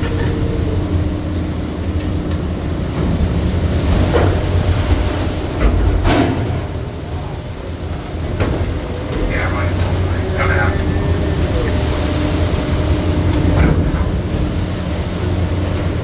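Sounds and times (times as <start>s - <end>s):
boat engine rumble: 0.0s - 16.0s
knocks and clanks: 8.2s - 10.8s.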